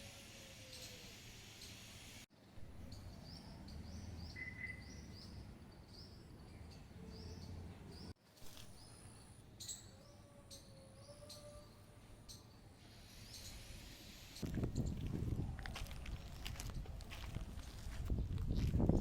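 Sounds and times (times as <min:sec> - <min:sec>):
small bird chirping: 0:02.8 - 0:15.0.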